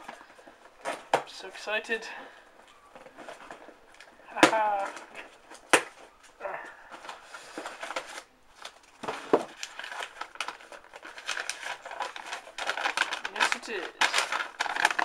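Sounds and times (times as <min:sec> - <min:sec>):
rustling: 0:02.3 - 0:15.0
packaging crinkling and tearing: 0:02.9 - 0:15.0
knife cutting open package: 0:09.0 - 0:15.0.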